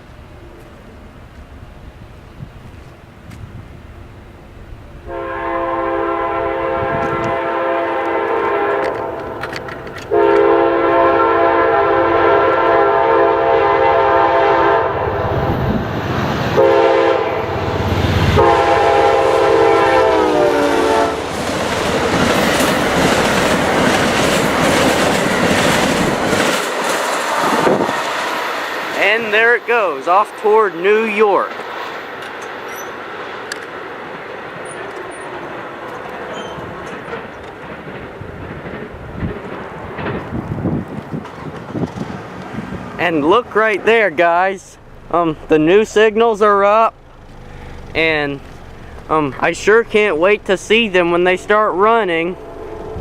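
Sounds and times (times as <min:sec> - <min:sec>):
locomotive air horn: 0:05.0 - 0:09.4, 0:10.1 - 0:15.5, 0:16.5 - 0:21.3, 0:27.3 - 0:28.3, 0:52.3 - 0:53.0
train wheels clacking: 0:19.9 - 0:30.6, 0:31.4 - 0:42.8.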